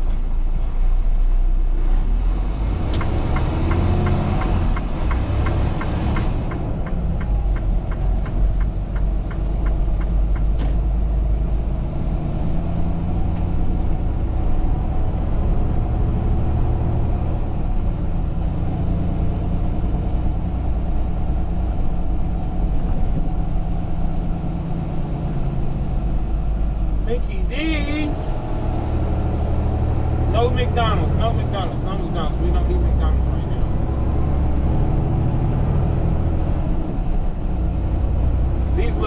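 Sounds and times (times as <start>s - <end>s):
diesel engine drone: 0.0s - 39.0s
road noise: 0.0s - 39.0s
turn signal ticking: 2.9s - 10.9s.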